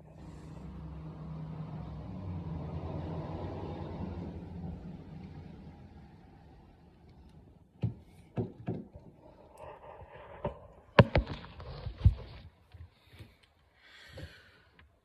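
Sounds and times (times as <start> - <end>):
sharp clicks and knocks: 7.1 - 9.2, 10.3 - 13.5.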